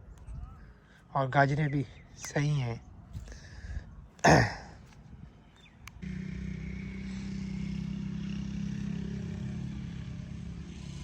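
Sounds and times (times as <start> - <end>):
engine running steadily: 5.7 - 11.0.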